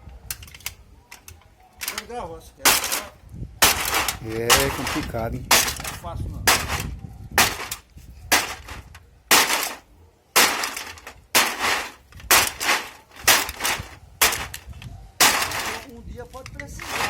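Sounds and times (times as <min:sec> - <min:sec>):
heavy smashing blows: 0:02.6 - 0:15.9, 0:16.8 - 0:17.0.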